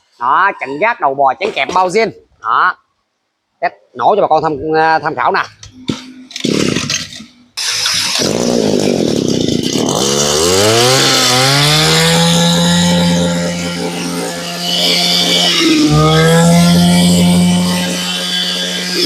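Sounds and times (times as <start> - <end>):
brush cutter engine running: 6.4 - 19.0.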